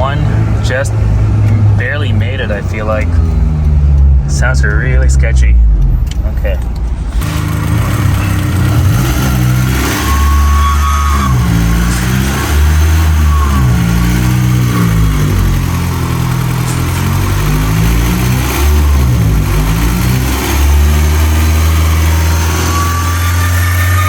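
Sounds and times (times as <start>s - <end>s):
car engine running: 0.0s - 24.0s
high whistle from pulley bearing: 8.1s - 15.2s, 21.8s - 24.0s.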